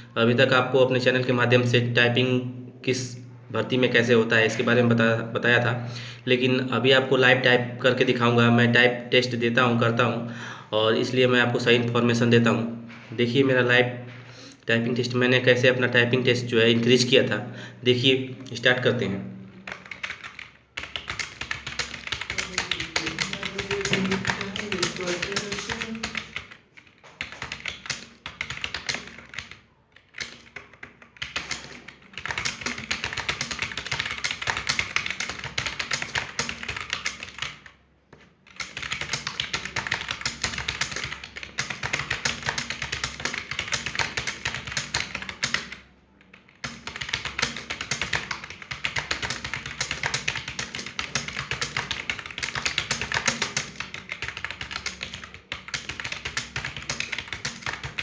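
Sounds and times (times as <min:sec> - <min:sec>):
fast keyboard typing: 0:19.5 - 0:58.0.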